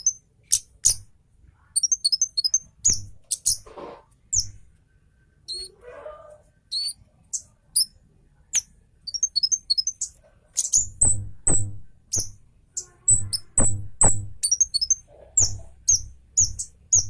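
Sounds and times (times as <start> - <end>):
bird singing whistled notes: 0.0 - 1.1, 1.8 - 3.6, 4.3 - 4.6, 6.7 - 8.0, 8.6 - 17.0.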